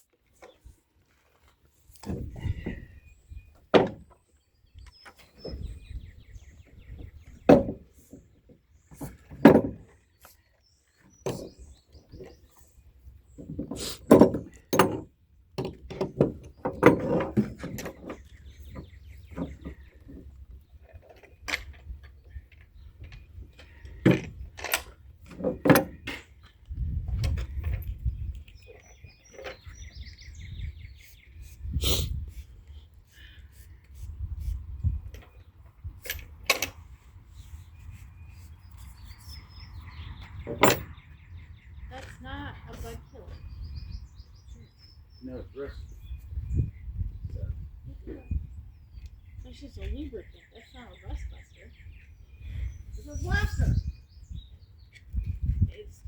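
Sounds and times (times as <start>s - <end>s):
birds chirping faintly: 0.1s - 56.0s
irregular knocks and clanks: 13.4s - 18.2s, 40.4s - 41.0s.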